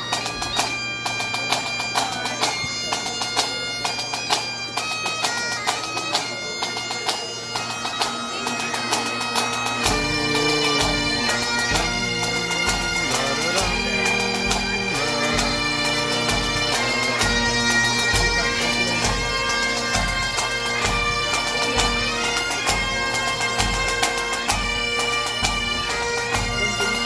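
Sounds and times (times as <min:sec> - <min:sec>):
bagpipes playing: 0:00.0 - 0:27.0
drum beating: 0:09.0 - 0:27.0.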